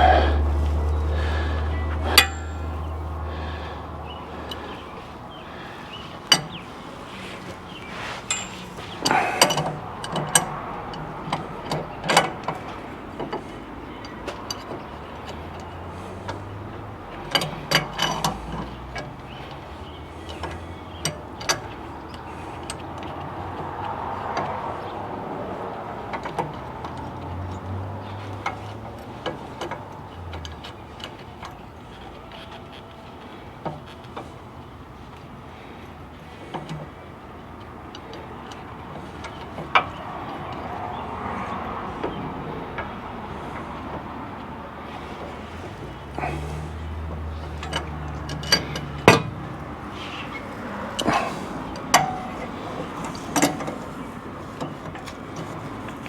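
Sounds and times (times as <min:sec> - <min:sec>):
hand tools clicking on metal: 0:00.8 - 0:03.3, 0:06.2 - 0:16.5, 0:45.6 - 0:56.0.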